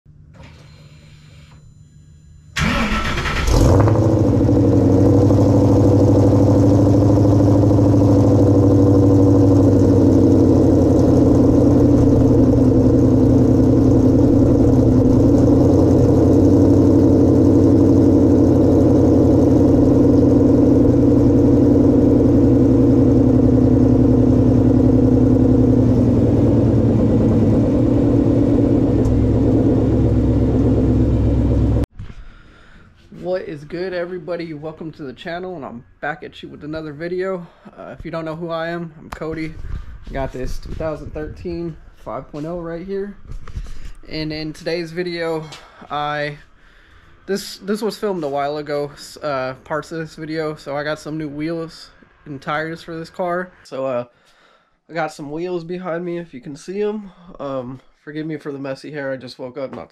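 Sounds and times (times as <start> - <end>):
car engine starting and idling: 2.6 - 31.9.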